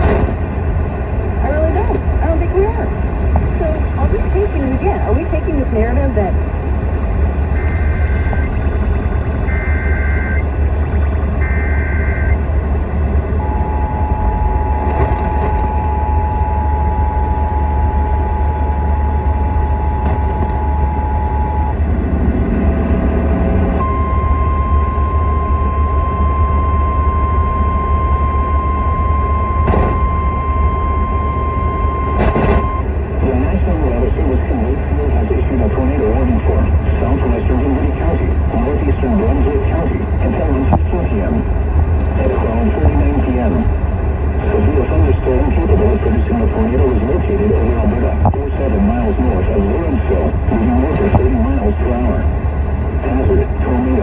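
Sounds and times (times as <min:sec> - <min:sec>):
loud low hum: 0:00.0 - 0:54.0
two-tone attention signal: 0:09.4 - 0:10.5, 0:11.4 - 0:12.4, 0:13.4 - 0:21.8, 0:23.8 - 0:32.9.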